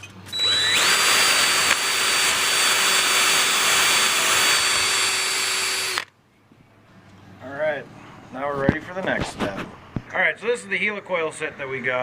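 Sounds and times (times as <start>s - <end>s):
electric drill whining: 0.3s - 6.1s.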